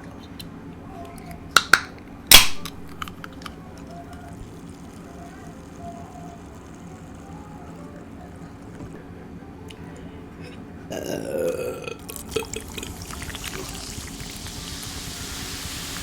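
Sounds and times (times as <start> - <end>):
person burping loudly: 10.9 - 14.0.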